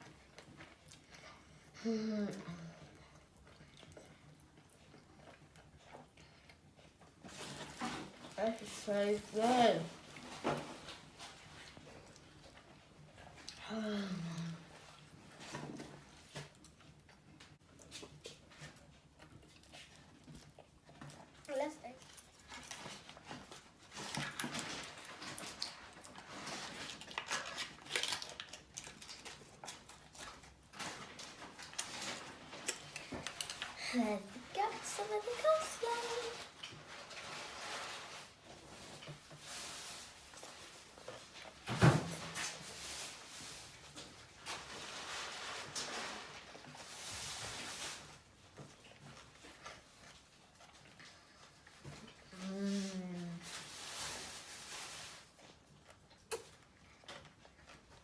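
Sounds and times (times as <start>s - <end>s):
person chewing and crunching food: 0.0s - 8.4s, 10.0s - 35.4s, 46.3s - 58.0s
person chewing crunchy food: 16.0s - 33.8s.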